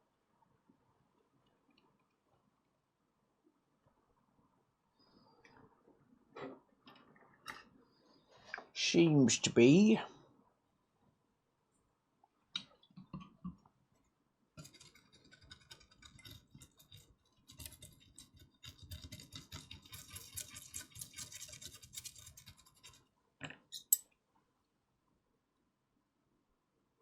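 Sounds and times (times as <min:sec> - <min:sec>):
scratching and scrubbing: 0:14.6 - 0:23.1.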